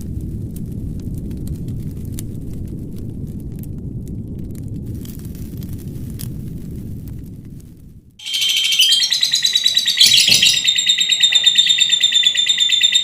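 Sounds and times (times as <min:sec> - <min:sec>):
songbird singing rattling song: 0:08.2 - 0:13.0.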